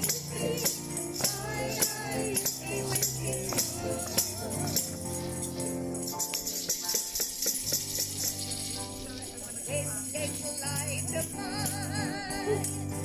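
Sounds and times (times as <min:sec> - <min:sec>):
person singing: 0:00.0 - 0:05.6, 0:08.8 - 0:13.0
jingling hand percussion: 0:00.0 - 0:13.0.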